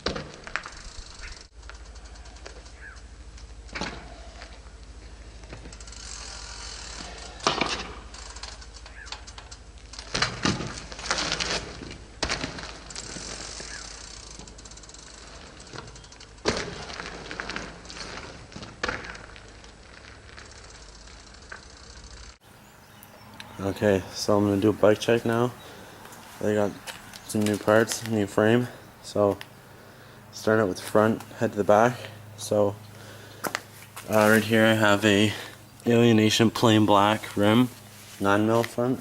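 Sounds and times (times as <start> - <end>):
bike hub ratcheting: 0.0 - 22.4
bike rattling: 0.0 - 39.0
steady low buzz: 0.7 - 10.1, 10.7 - 39.0.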